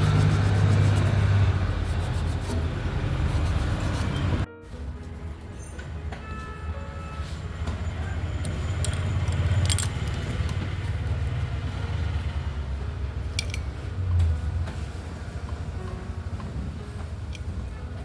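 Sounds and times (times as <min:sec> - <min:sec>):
light metallic clicks and jingles: 0:08.4 - 0:10.6, 0:13.4 - 0:13.7.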